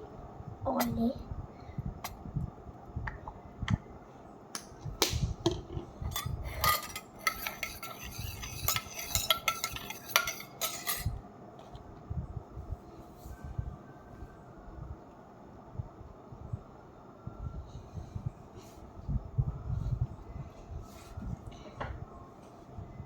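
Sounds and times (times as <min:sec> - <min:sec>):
spoon clinking against bowl: 0:06.1 - 0:11.1.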